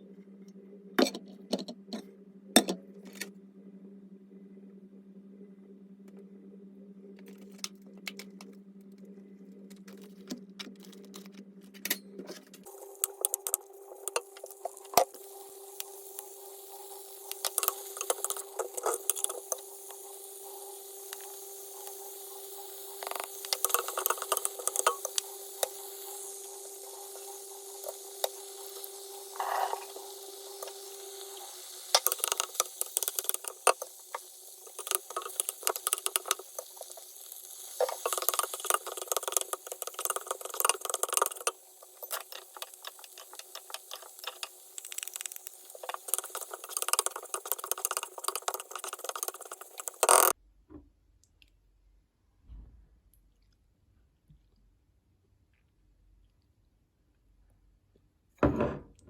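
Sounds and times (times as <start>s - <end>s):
appliance hum: 0.0s - 50.4s
hiss: 12.7s - 50.4s.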